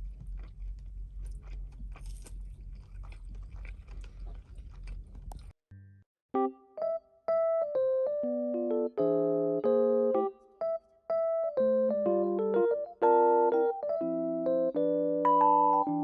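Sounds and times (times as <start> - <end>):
electric piano playing chords: 6.4 - 16.0.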